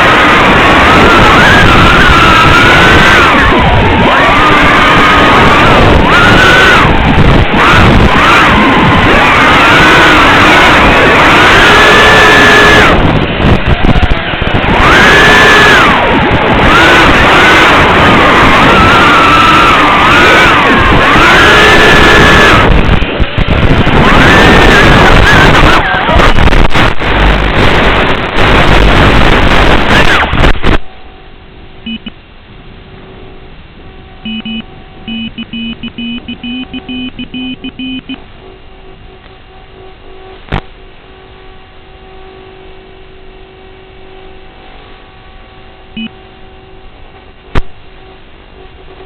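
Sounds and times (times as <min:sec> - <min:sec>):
drone motors whining: 0:00.0 - 0:32.2, 0:32.9 - 0:49.0
low hum: 0:00.0 - 0:49.0
short double beep: 0:31.8 - 0:32.2, 0:34.2 - 0:38.2, 0:46.0 - 0:46.2.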